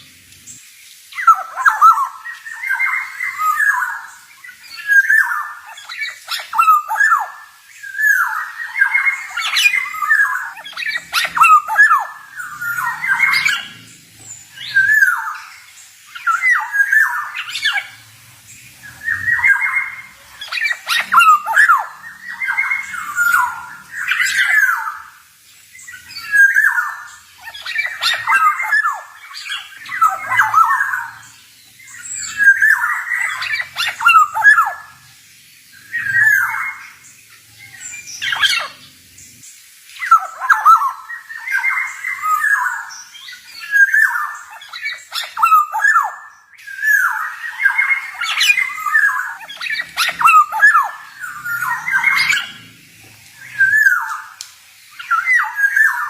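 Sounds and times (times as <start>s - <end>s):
bird singing sliding notes: 1.2s - 25.1s, 45.0s - 56.0s.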